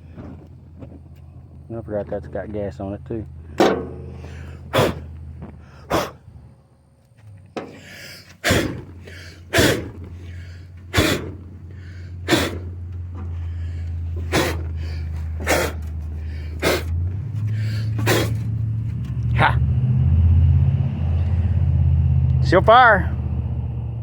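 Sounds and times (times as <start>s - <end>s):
lawnmower engine cranking and popping: 0.0s - 5.8s, 7.0s - 19.3s.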